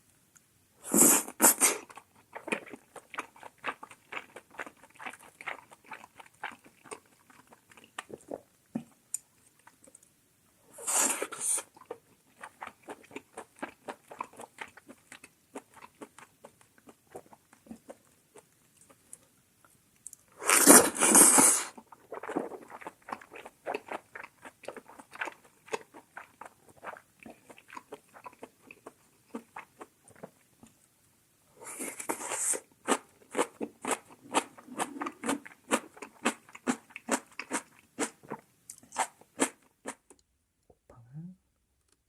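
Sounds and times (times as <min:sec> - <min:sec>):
loud slurp: 0:00.8 - 0:01.9, 0:20.4 - 0:22.8
wet chewing: 0:01.8 - 0:08.4, 0:11.6 - 0:20.2, 0:21.6 - 0:30.7, 0:32.8 - 0:40.0.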